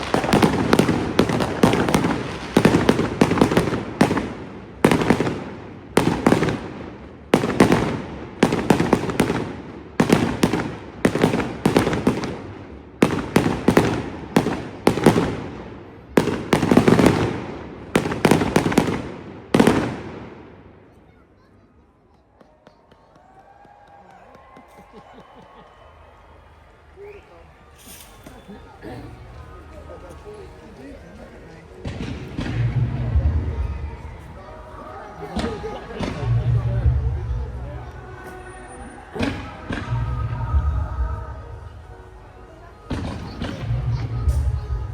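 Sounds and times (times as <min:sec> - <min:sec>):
fireworks bursting with loud bangs: 0:00.0 - 0:21.0, 0:31.7 - 0:41.3, 0:42.9 - 0:44.9.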